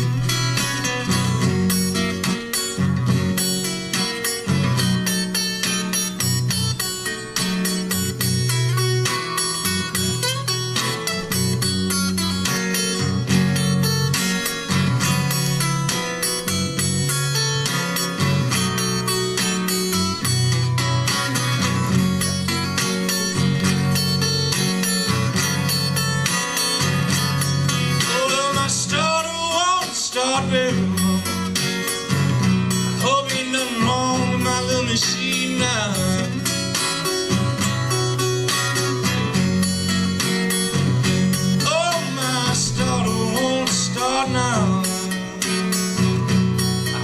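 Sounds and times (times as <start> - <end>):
acoustic guitar blues picking: 0.0 - 47.0
man singing: 28.0 - 31.9, 32.9 - 36.5, 41.6 - 45.8.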